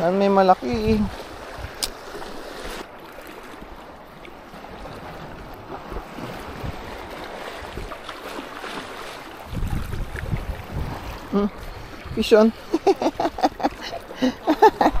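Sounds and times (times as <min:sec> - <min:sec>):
strong wind buffeting microphone: 0:00.5 - 0:02.0, 0:04.8 - 0:08.0, 0:09.4 - 0:15.0.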